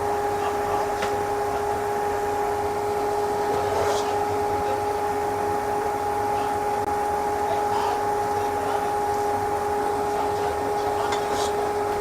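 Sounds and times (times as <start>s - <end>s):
fan motor humming with whine: 0.0s - 12.0s.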